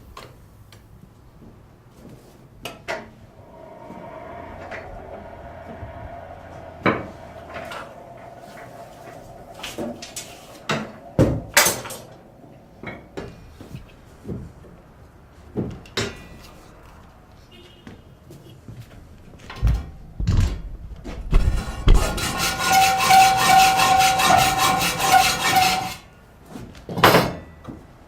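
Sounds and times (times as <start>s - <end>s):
steady hum: 3.3s - 13.6s.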